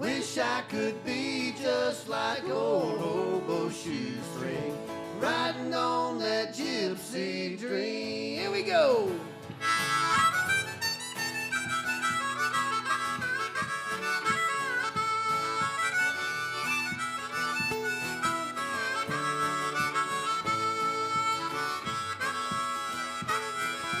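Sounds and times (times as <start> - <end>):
country-folk band accompaniment: 0.0 - 24.0
harmonica solo: 9.3 - 24.0.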